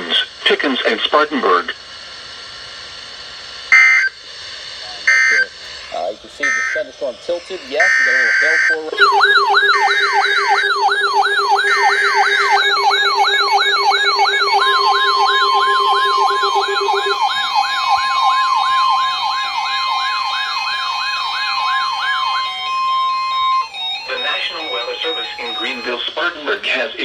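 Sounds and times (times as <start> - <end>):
electronic yelp siren: 5.1 - 5.5, 6.4 - 6.9, 7.7 - 26.3
steady warning alarm tone: 5.1 - 6.9, 7.6 - 26.5
buzzy data header bursts: 9.0 - 26.0.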